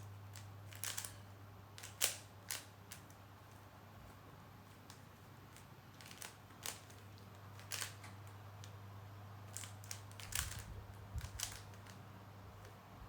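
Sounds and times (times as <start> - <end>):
steady low hum: 0.0 - 13.0
puzzle cube clicking: 0.7 - 1.2, 1.8 - 3.1, 6.0 - 7.0, 7.6 - 8.1, 9.5 - 12.0.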